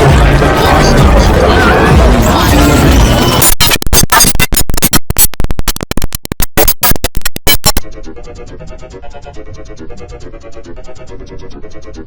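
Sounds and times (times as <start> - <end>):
stuttering computer shutdown sound: 1.9 - 10.8.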